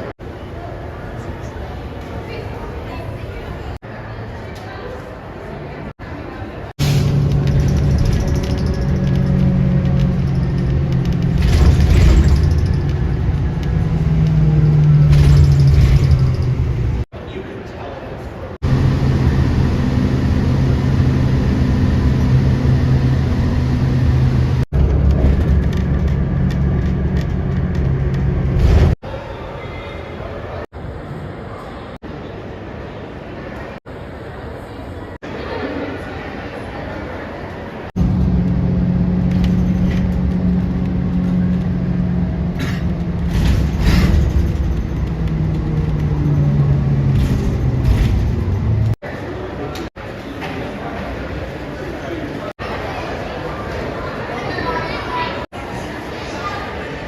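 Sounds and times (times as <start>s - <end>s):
aircraft engines rumbling: 6.6s - 17.1s, 18.2s - 29.0s, 37.9s - 54.4s.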